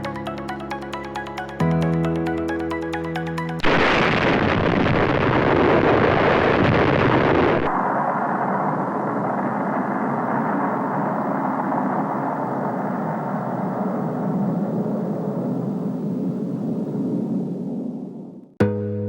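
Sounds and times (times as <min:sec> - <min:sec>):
waterfall rushing: 0:03.6 - 0:13.5.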